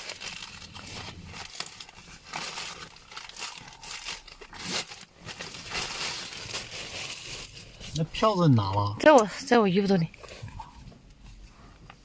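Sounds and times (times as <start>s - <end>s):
clothing or plastic rustling: 0.0s - 8.4s.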